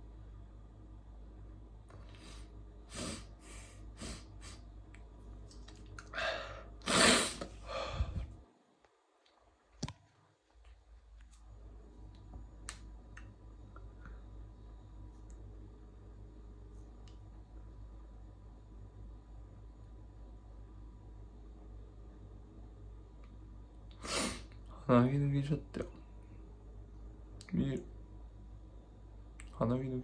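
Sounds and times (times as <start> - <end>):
person sniffing sharply: 2.0 - 4.6, 6.2 - 8.3, 24.0 - 24.5
forceful breath out: 6.1 - 8.4.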